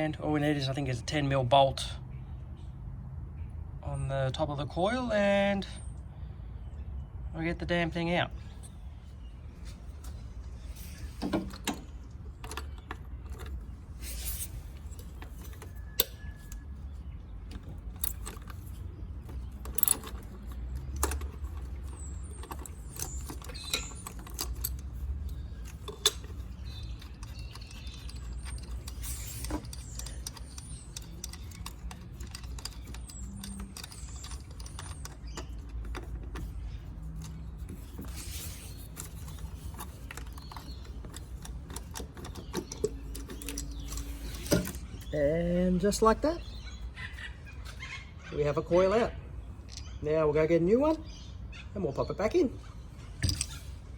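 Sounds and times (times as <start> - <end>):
metallic clicks of hand tools: 19.5 - 36.4.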